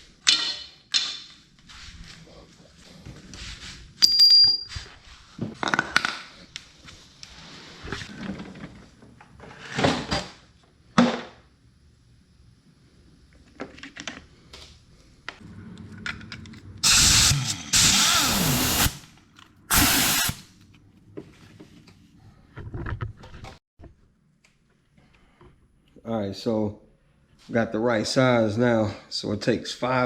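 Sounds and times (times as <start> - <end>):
pneumatic impact wrench burst: 16.8 - 20.5.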